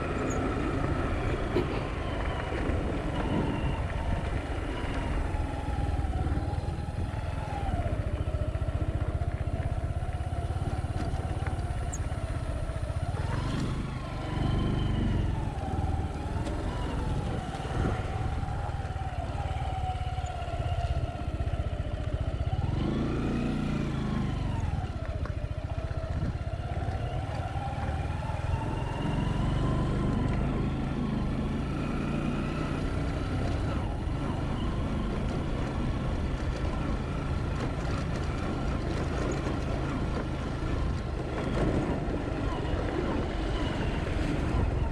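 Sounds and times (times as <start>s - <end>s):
wind and road noise: 0.0s - 44.9s
vehicle engine revving: 10.2s - 21.0s, 22.4s - 25.3s, 26.0s - 44.9s.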